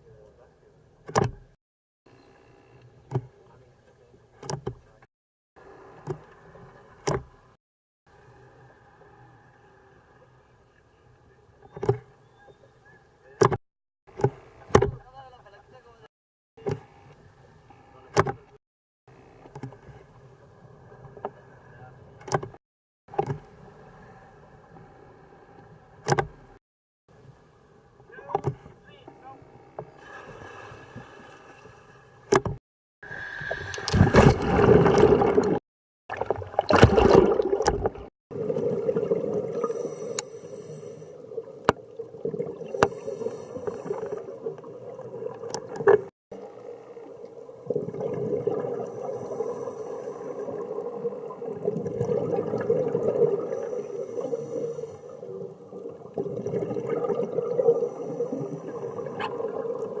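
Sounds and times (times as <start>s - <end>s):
underwater hiss and hum: 33.0s - 35.6s, 38.4s - 60.0s
regulator bubbles gurgling: 33.0s - 60.0s.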